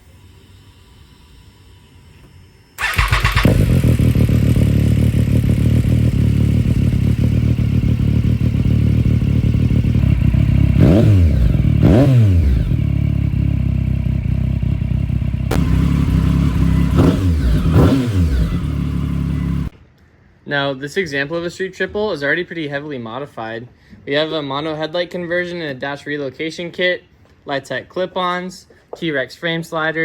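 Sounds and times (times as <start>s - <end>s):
motorcycle engine revving: 2.8s - 19.7s
motorcycle engine starting and idling: 2.8s - 19.7s.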